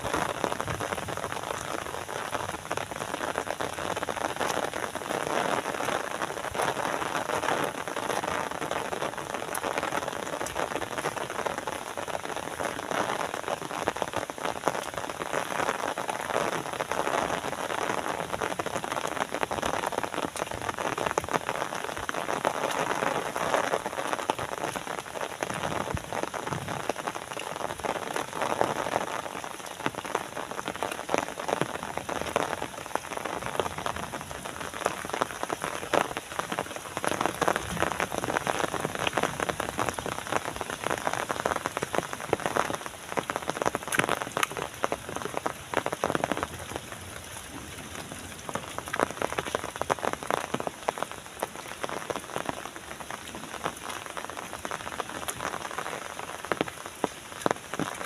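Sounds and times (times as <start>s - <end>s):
steady rainfall: 0.0s - 58.0s.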